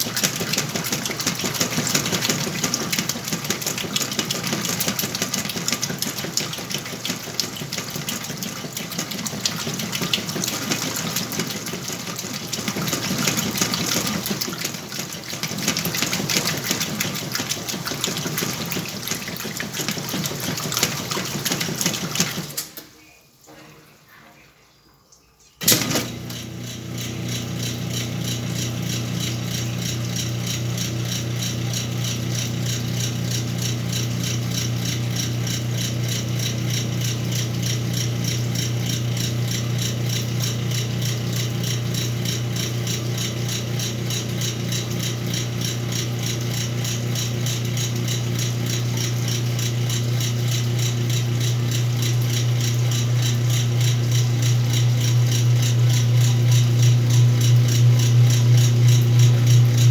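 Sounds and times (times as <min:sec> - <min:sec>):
washing machine motor humming: 0:00.0 - 0:24.1, 0:25.6 - 0:59.9
washing machine clunk: 0:25.6 - 0:31.4.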